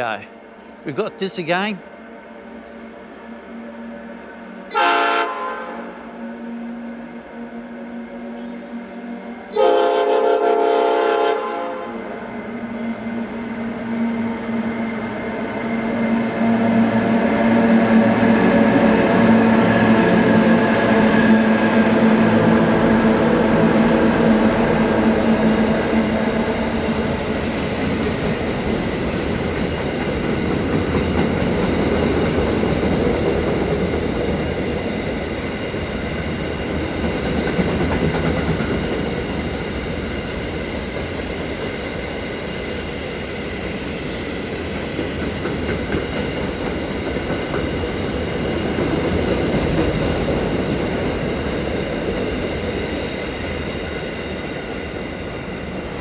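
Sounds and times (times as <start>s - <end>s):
train wheels clattering on rails: 25.8s - 55.8s.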